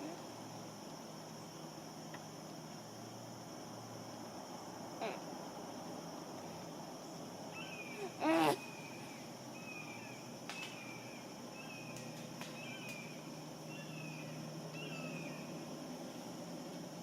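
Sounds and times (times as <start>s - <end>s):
high insect drone: 0.0s - 17.0s
baby squealing: 8.0s - 8.6s.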